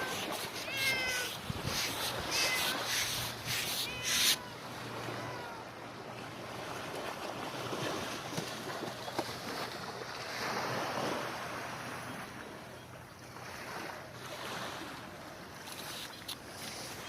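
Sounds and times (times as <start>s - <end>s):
wind noise on microphone: 0.0s - 4.5s
small waves washing ashore: 0.0s - 17.0s.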